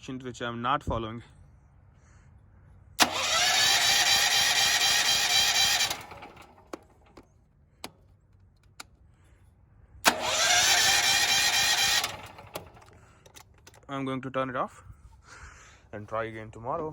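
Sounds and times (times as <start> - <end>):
generator starter whirring: 3.0 - 8.0, 10.0 - 13.8.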